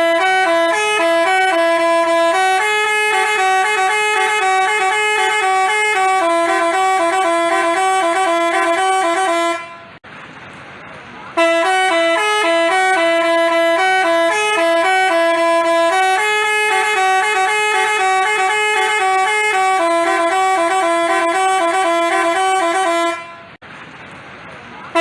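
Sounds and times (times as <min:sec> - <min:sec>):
multi-tone musical bus horn: 0:00.0 - 0:10.0, 0:11.3 - 0:23.6.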